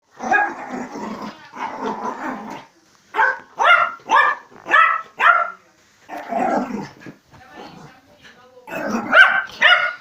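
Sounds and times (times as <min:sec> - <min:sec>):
dog growling: 0:00.1 - 0:02.7, 0:06.1 - 0:08.0, 0:08.6 - 0:09.3.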